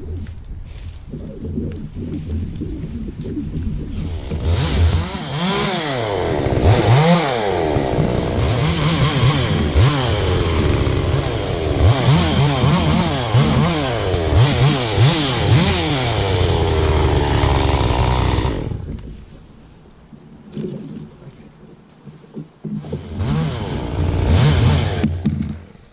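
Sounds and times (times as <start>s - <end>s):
chainsaw revving: 4.0s - 18.9s, 22.8s - 25.7s.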